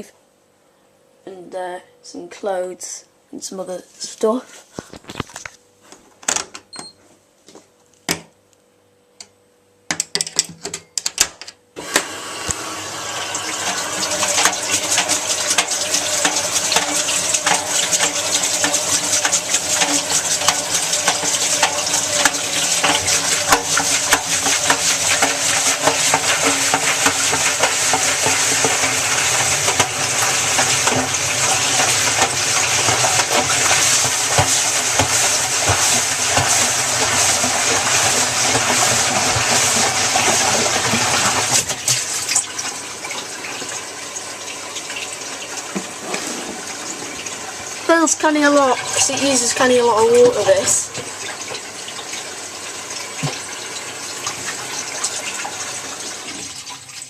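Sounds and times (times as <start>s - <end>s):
water rushing into drum: 11.9s - 57.0s
washing machine clicks and knocks: 13.7s - 41.5s.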